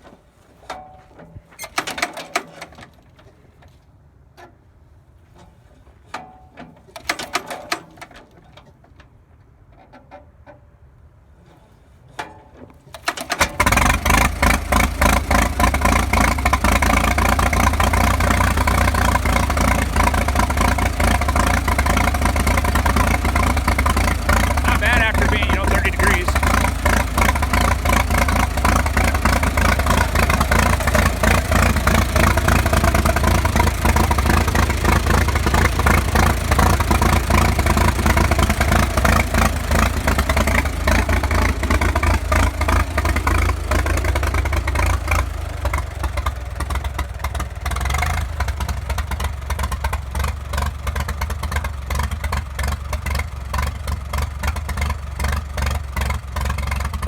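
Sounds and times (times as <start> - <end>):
tractor engine running: 12.9 - 57.0.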